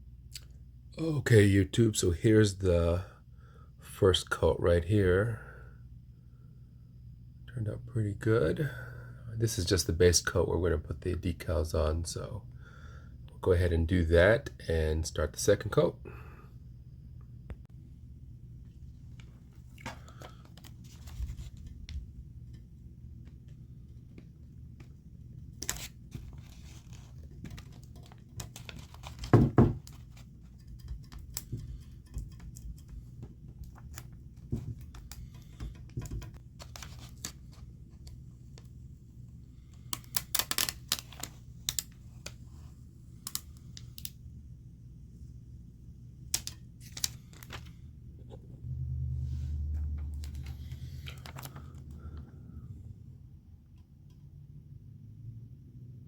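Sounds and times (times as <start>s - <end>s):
low room hum: 0.0s - 56.0s
paper and tape rustling: 19.1s - 22.6s, 24.2s - 38.1s.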